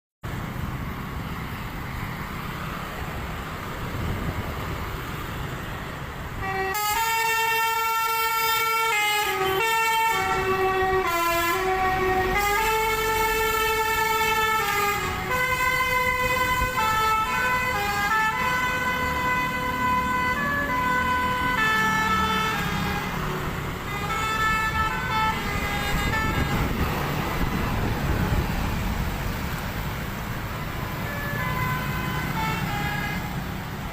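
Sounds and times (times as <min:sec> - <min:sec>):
engine and road rumble: 0:00.2 - 0:33.9
multi-tone musical air horn: 0:06.4 - 0:23.3, 0:23.9 - 0:26.9, 0:31.0 - 0:33.4.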